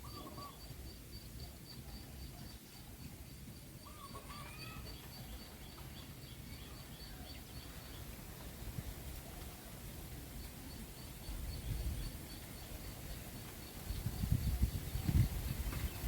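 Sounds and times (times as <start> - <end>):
birds chirping: 0.0 - 3.2.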